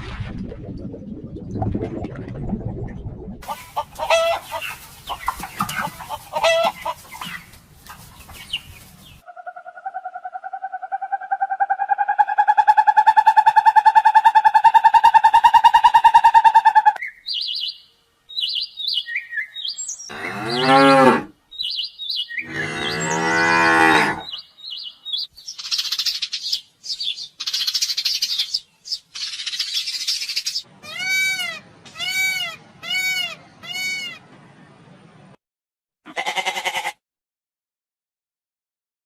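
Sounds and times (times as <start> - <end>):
bird chirps: 17.0 - 20.6, 21.5 - 23.5, 24.2 - 30.7
cow mooing: 20.1 - 21.3, 22.4 - 24.3.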